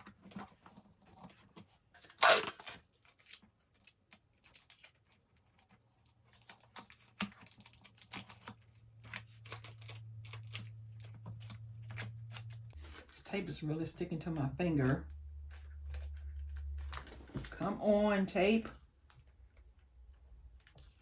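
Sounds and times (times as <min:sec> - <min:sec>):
tape and packaging crinkling: 0:00.0 - 0:13.4, 0:14.1 - 0:17.7
tape ripped off roll: 0:02.1 - 0:02.8
low steady hum: 0:07.4 - 0:21.0.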